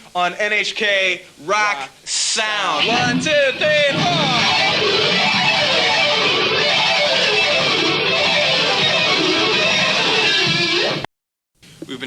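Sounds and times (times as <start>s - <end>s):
electric guitars playing rock: 2.7s - 11.1s.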